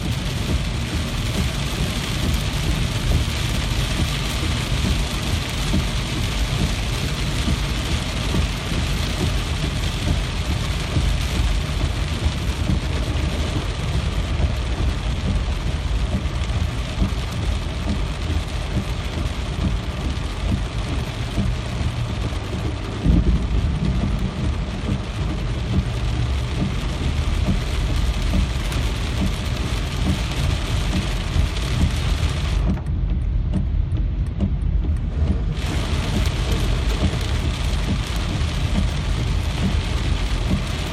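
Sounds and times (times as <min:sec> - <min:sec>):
deep low rumble: 0:00.0 - 0:40.9
steady rain: 0:00.0 - 0:40.9
low thump: 0:22.5 - 0:25.9, 0:30.0 - 0:39.8.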